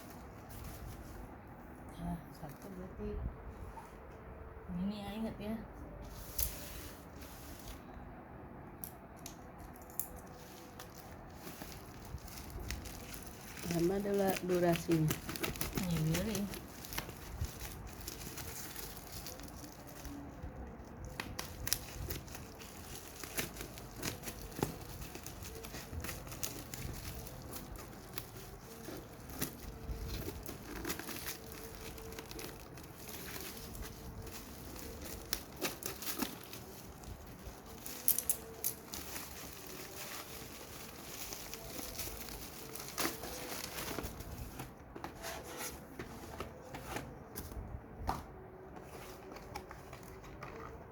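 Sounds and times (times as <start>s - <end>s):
plastic packaging crinkling: 9.9s - 44.8s.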